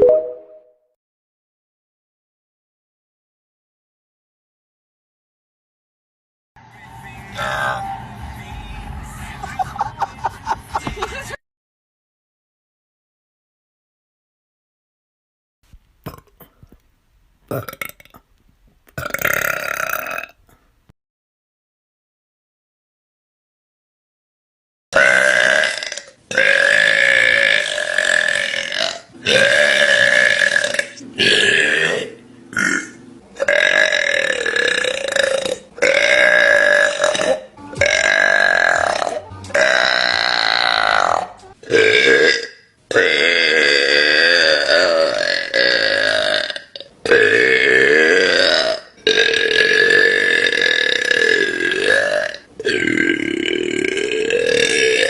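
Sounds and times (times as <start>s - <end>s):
woman burping loudly: 16.0s - 16.8s, 17.5s - 18.3s, 19.0s - 20.6s, 25.0s - 55.0s.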